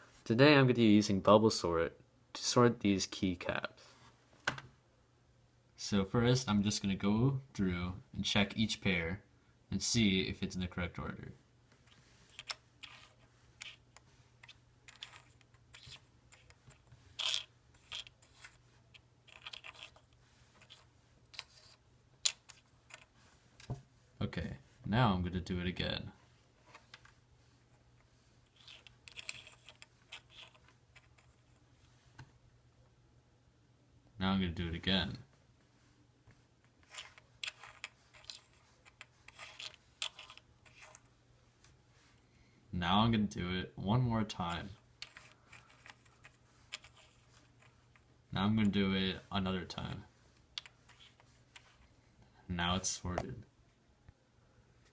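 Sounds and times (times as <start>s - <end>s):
faint steady hum: 0.0s - 54.9s
plastic keycaps clicking and scraping: 19.3s - 20.8s, 28.5s - 31.5s, 36.8s - 41.0s, 45.0s - 48.1s.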